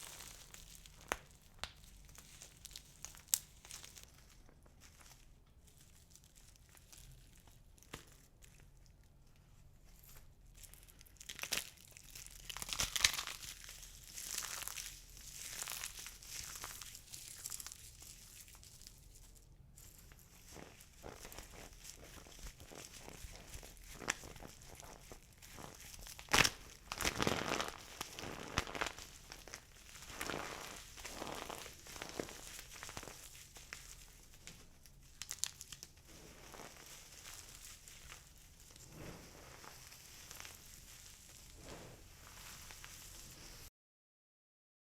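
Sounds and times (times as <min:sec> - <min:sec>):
soap balls crunching: 0:00.0 - 0:04.1, 0:10.7 - 0:19.0, 0:20.5 - 0:43.1.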